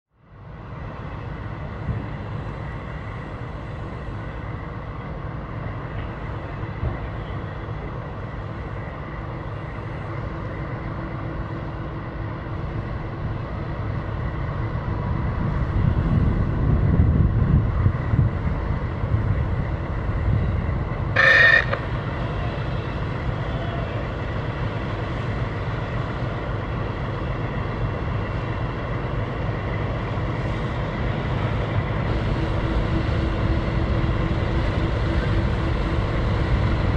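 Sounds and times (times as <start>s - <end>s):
ship engines rumbling: 0.2s - 36.9s
short horn toot: 21.2s - 21.8s.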